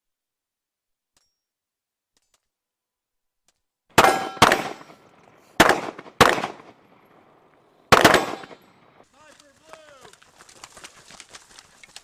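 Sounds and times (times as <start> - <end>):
rifle shots: 4.0 - 9.0.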